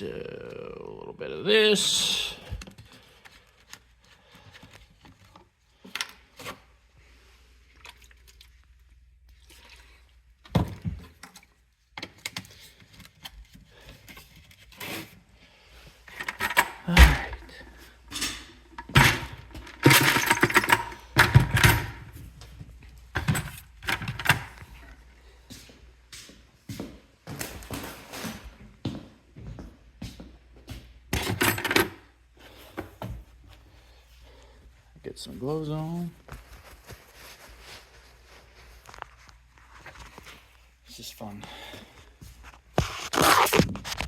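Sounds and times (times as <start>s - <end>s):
containers knocking and rattling: 16.1s - 22.2s, 23.1s - 24.7s
clattering: 18.1s - 22.1s.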